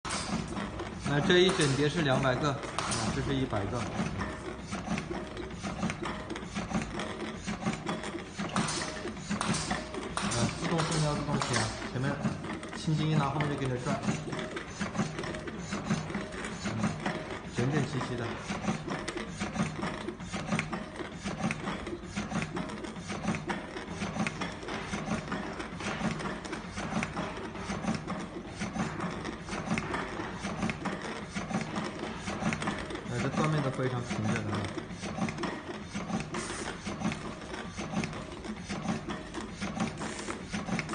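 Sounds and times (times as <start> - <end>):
cutting machine clicking and clattering: 0.0 - 40.9.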